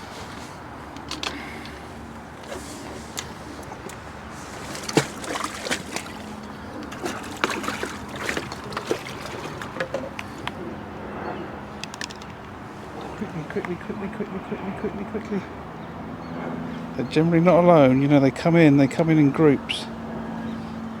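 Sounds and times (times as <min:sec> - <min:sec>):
water sloshing and splashing: 0:00.0 - 0:10.8
fishing tackle clicking and knocking: 0:00.9 - 0:01.8, 0:06.8 - 0:10.6, 0:11.7 - 0:12.6.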